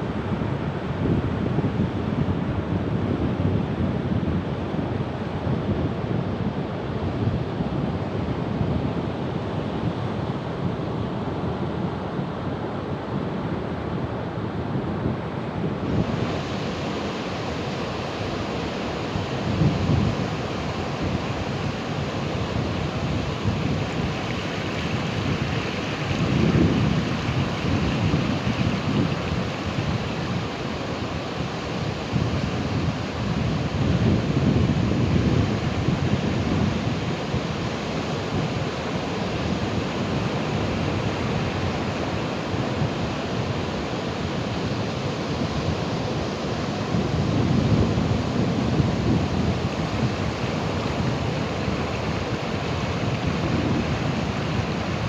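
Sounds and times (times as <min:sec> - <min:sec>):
waves breaking: 0:15.8 - 0:55.0.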